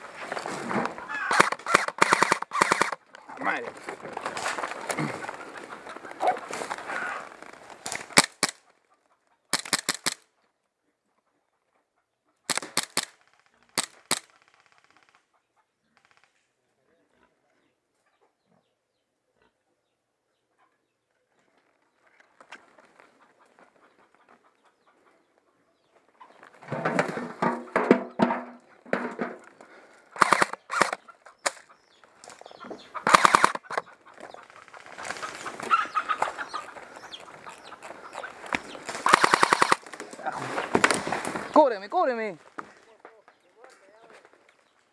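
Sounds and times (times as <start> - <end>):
chickens clucking: 0.0 - 9.5, 10.8 - 12.5, 15.3 - 16.0, 16.9 - 41.7
airsoft gun bursts: 1.2 - 3.0, 9.5 - 10.2, 12.5 - 15.2, 30.2 - 31.6, 33.0 - 33.8, 39.0 - 39.9.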